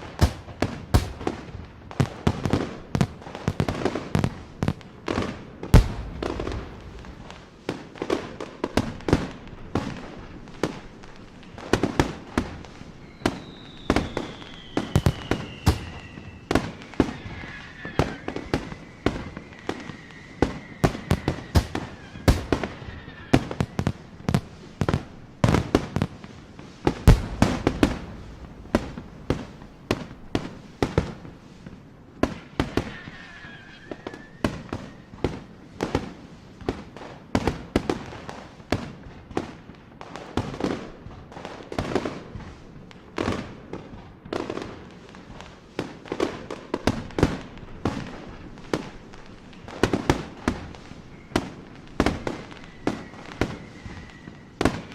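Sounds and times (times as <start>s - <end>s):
fireworks bangs and pops: 0.0s - 54.9s
loud firework blast: 5.7s - 8.2s, 12.4s - 26.0s, 26.9s - 31.4s
high firework whistle: 5.8s - 7.5s, 12.8s - 24.3s, 27.1s - 31.5s, 32.6s - 35.4s, 49.6s - 54.9s.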